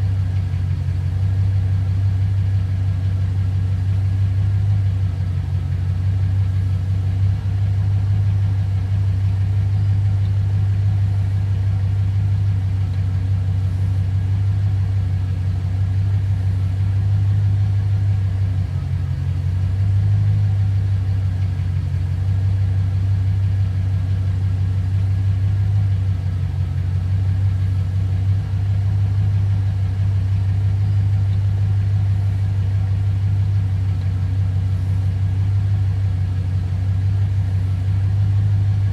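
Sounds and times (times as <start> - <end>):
car engine idling: 0.0 - 38.9.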